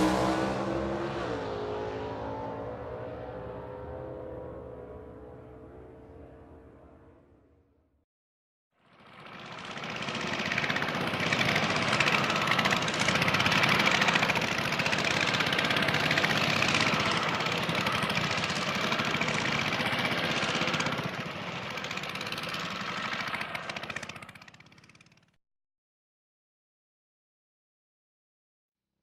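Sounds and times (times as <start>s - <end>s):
motorcycle engine running: 8.8s - 25.4s.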